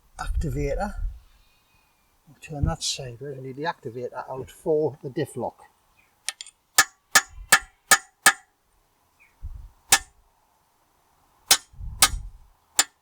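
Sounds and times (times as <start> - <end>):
hammer clanging on metal: 6.8 - 8.4, 11.5 - 12.2, 12.8 - 13.0.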